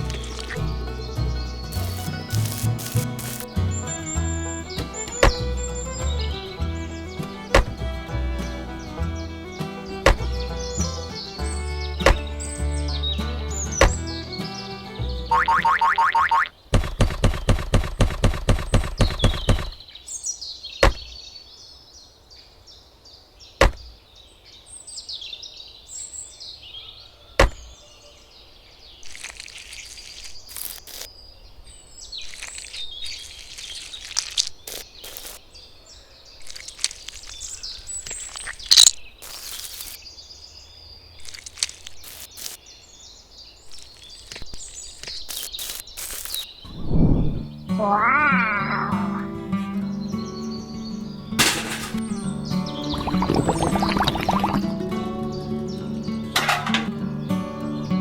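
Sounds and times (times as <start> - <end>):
birds chirping: 0.0 - 58.0
faint outdoor background noise: 0.0 - 58.0
sharp clicks: 1.7 - 3.5, 38.0 - 40.0, 43.7 - 46.5.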